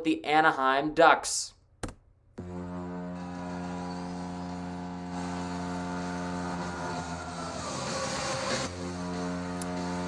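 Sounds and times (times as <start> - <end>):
low steady goal horn: 2.4 - 10.0.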